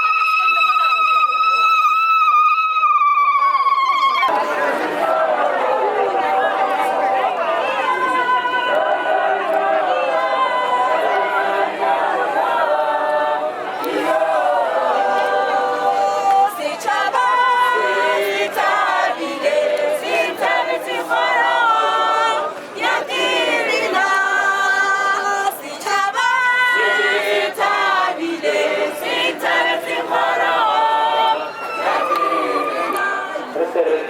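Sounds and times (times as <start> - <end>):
choir singing a cappella: 4.3 - 33.5.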